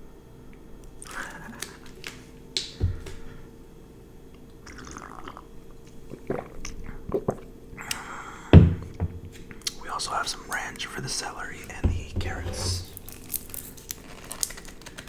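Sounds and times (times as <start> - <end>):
dull thump on table: 8.6 - 9.4, 11.8 - 12.9.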